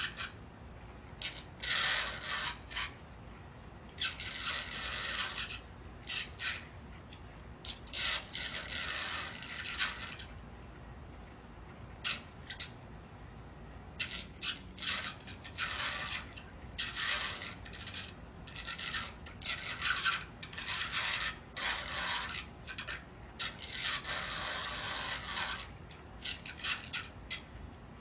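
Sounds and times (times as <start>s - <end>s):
scraping and rubbing: 0.0s - 0.4s, 1.2s - 3.0s, 4.0s - 10.4s, 14.0s - 27.5s.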